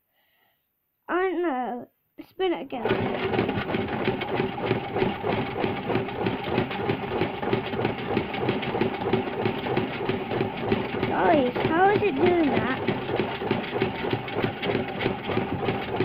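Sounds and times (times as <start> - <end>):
washing machine spinning: 2.8 - 16.0.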